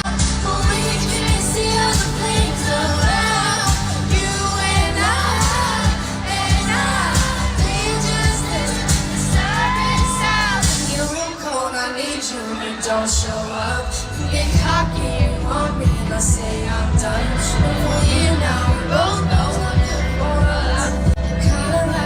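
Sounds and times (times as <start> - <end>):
pop backing track with kick drum: 0.0 - 11.1
woman singing pop: 0.0 - 22.0.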